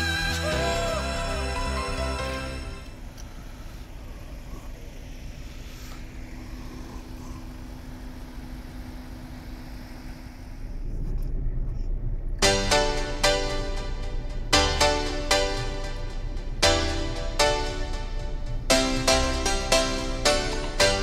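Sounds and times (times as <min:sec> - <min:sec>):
music: 0:00.0 - 0:02.9, 0:12.4 - 0:21.0
car engine running: 0:00.0 - 0:21.0.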